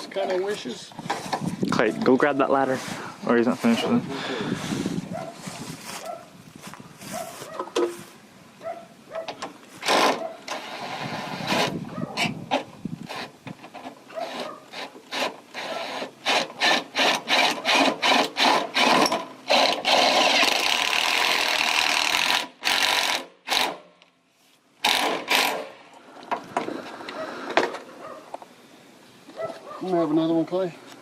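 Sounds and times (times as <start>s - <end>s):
cordless drill motor bursts: 9.8s - 11.8s, 14.2s - 23.9s, 24.8s - 25.8s.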